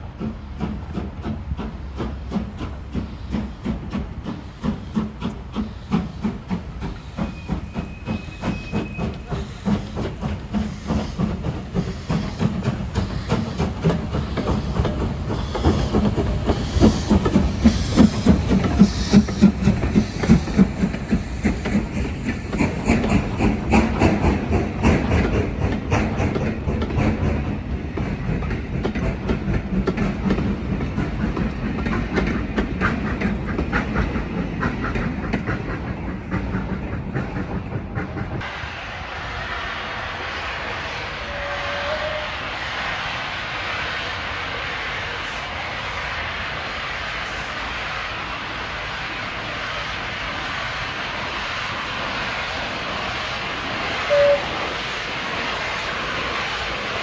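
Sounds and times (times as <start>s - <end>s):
steam train exhaust beat: 0.0s - 57.0s
wheels clattering over rail joints: 5.0s - 35.8s.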